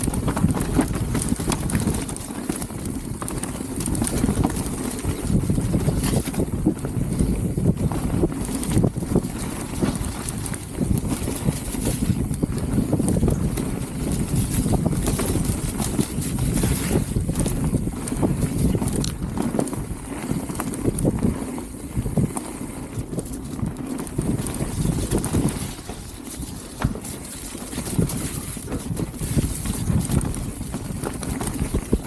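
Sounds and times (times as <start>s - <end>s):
bike clattering over bumps: 0.0s - 32.0s
wind rumble on microphone: 0.0s - 32.0s
tyres on wet dirt: 8.4s - 32.0s.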